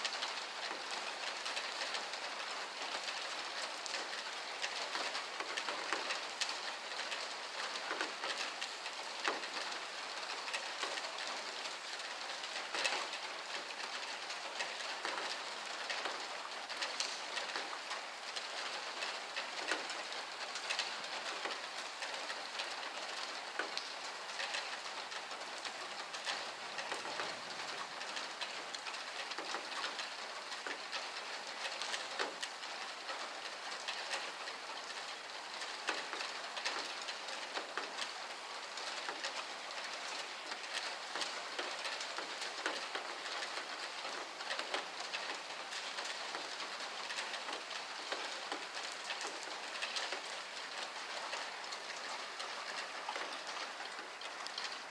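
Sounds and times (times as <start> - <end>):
heavy rain pouring: 0.0 - 54.9.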